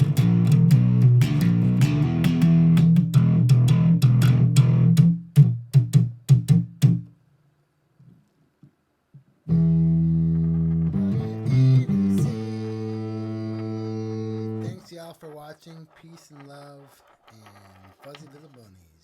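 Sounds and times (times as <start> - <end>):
plucked guitar notes: 0.0 - 5.0, 9.5 - 14.7
guitar chords: 0.0 - 5.1, 9.5 - 14.8.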